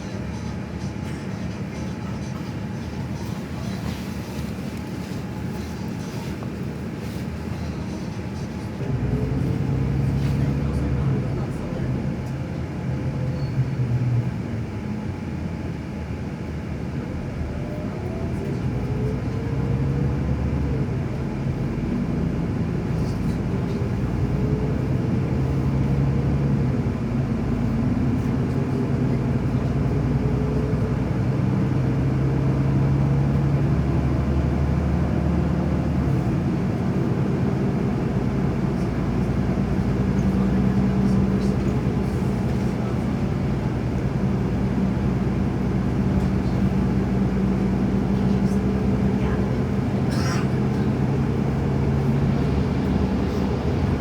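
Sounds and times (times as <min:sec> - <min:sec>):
vehicle rumble: 0:00.0 - 0:54.0.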